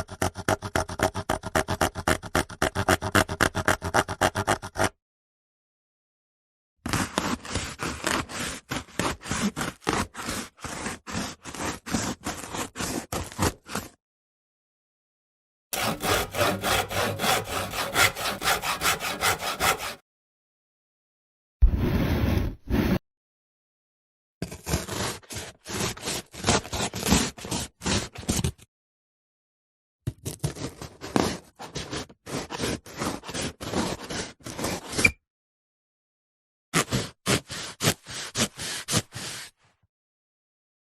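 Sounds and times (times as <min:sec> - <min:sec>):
handsaw cutting wood: 0:00.0 - 0:04.9, 0:06.9 - 0:13.9, 0:15.7 - 0:20.0, 0:24.4 - 0:28.1, 0:36.8 - 0:39.6.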